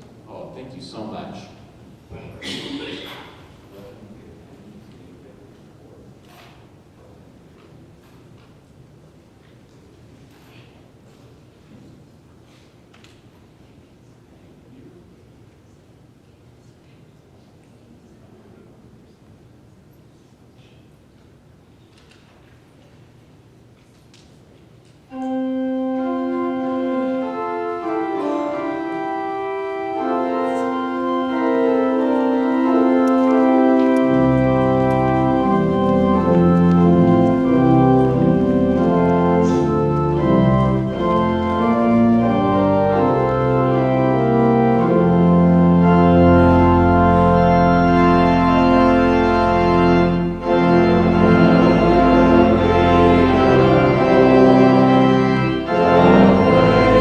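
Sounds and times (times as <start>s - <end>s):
organ pedal bass notes: 25.1s - 57.0s
organ playing chords: 25.1s - 57.0s.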